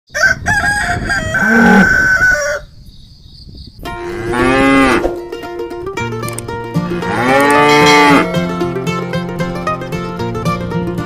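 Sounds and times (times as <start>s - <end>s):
rooster crowing: 0.1s - 2.8s
cow mooing: 1.4s - 2.0s, 4.0s - 5.2s, 6.9s - 8.5s
plucked-string music: 3.8s - 11.0s.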